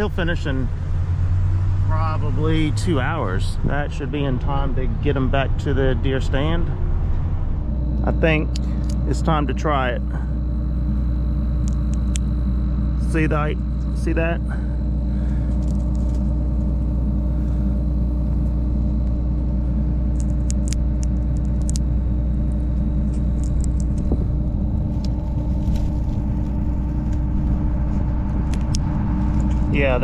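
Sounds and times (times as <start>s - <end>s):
vehicle engine idling: 0.0s - 30.0s.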